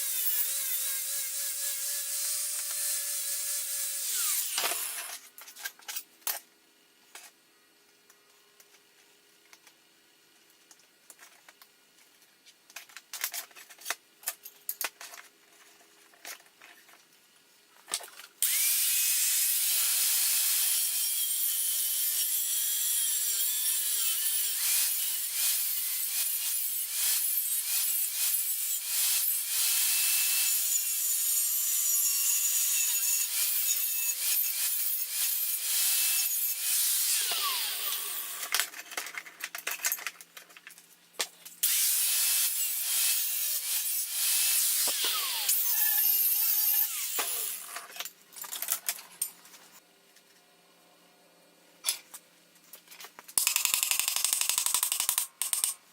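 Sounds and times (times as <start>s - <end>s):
power tool whining on steel: 0.0s - 5.1s, 18.4s - 38.6s, 41.6s - 47.7s.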